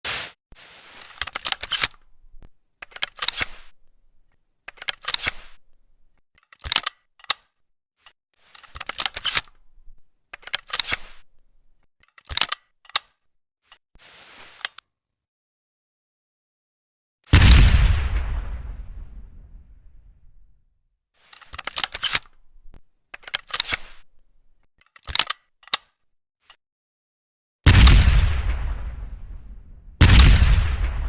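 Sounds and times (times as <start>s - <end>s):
shotgun action clicking: 4.7s - 5.6s, 6.4s - 7.5s, 12.0s - 13.1s, 21.4s - 25.9s.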